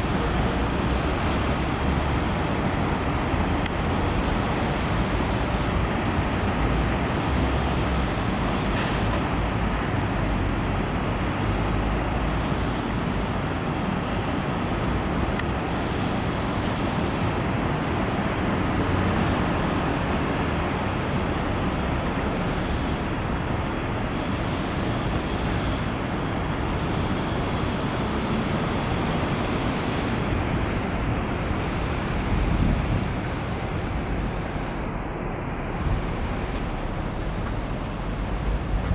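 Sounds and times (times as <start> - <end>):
road traffic rumbling hiss: 0.0 - 38.9.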